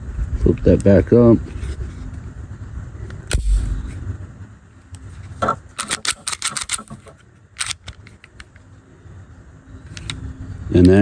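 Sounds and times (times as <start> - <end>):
dull thump: 3.3 - 4.0
pistol metallic clicks and rattles: 5.8 - 8.6, 9.9 - 10.2.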